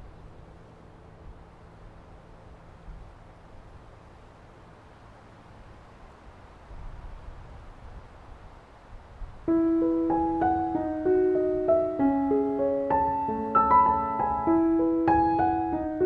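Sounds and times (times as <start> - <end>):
solo classical piano: 9.2 - 16.0.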